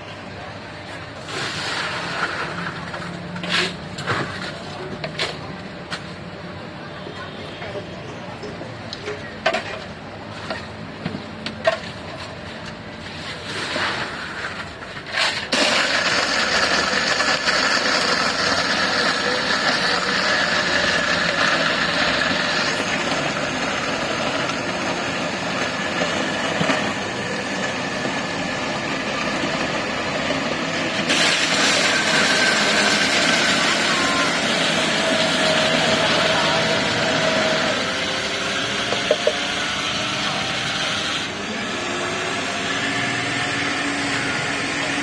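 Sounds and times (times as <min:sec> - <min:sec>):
electric blender running: 0:15.5 - 0:45.0.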